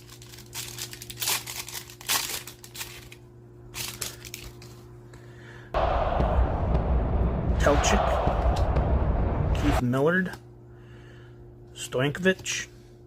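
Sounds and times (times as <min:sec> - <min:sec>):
card pack wrapper tearing and crinkling: 0:00.0 - 0:04.7.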